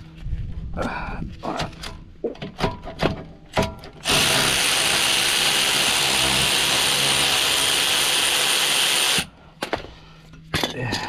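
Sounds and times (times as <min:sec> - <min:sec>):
cordless power tool spinning: 0:04.0 - 0:09.3.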